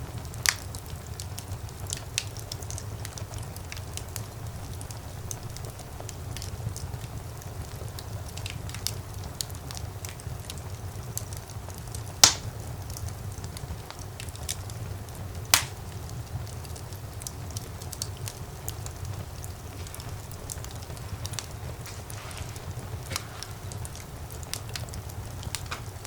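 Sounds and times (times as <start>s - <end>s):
fire rumbling with crackles: 0.0s - 26.0s
loud sharp pops: 12.2s - 12.5s, 15.5s - 15.8s.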